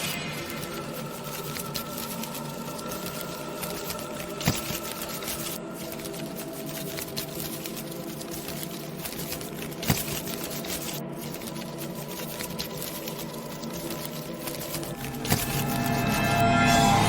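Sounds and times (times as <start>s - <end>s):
dense crackling and pattering: 0.0s - 17.0s
steady low drone: 14.6s - 17.0s.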